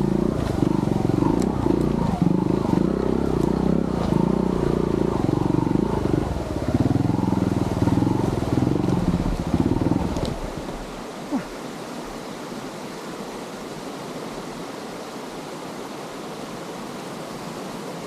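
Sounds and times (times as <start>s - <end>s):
motorcycle engine pulsing at low revs: 0.0s - 11.0s.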